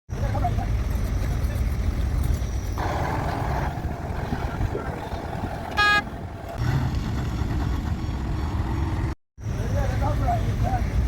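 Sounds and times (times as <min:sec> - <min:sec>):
heavy diesel machinery rumbling: 0:00.1 - 0:11.0
short horn toot: 0:05.7 - 0:06.2.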